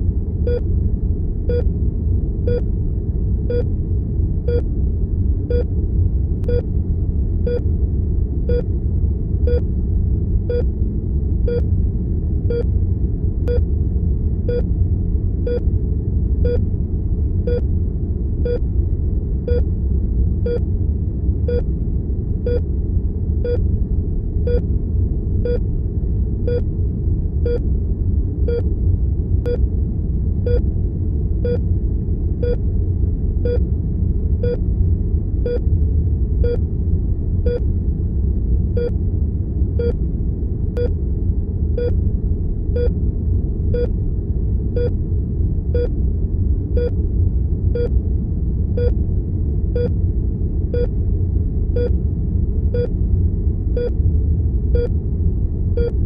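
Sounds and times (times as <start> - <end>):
low room rumble: 0.0 - 56.0
heart monitor beeping: 6.4 - 6.7, 10.5 - 10.7, 16.4 - 16.6, 23.4 - 23.6, 25.4 - 25.6, 31.4 - 31.6, 43.7 - 43.9, 44.8 - 45.0, 46.8 - 47.0, 48.8 - 49.0, 53.8 - 54.0, 55.8 - 56.0.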